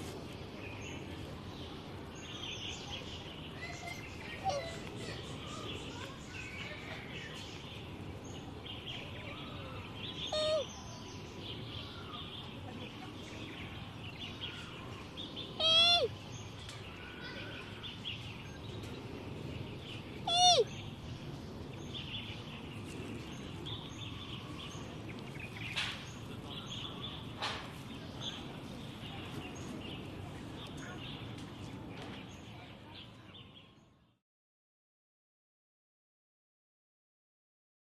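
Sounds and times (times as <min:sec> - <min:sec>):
faint bird chirping: 0:00.2 - 0:34.2
panda cub calling: 0:10.3 - 0:10.6, 0:15.6 - 0:16.1, 0:20.3 - 0:20.7.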